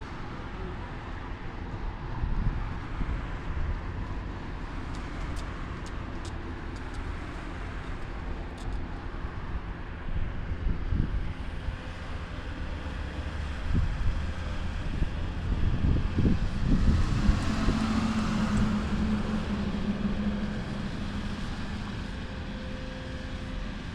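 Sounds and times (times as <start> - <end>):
low engine rumble: 0.0 - 23.9.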